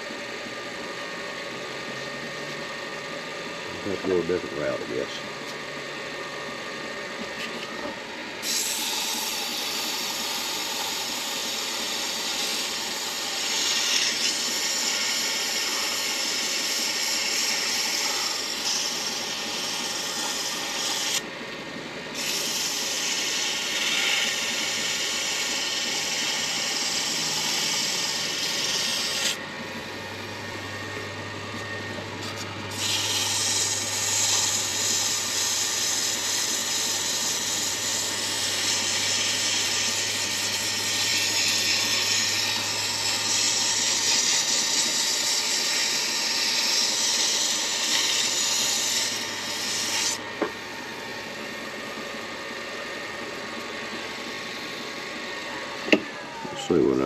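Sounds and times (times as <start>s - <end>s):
lathe motor running: 0.0s - 57.0s
abrasive rasping on spinning wood: 8.4s - 21.2s, 22.1s - 29.8s, 31.4s - 50.6s.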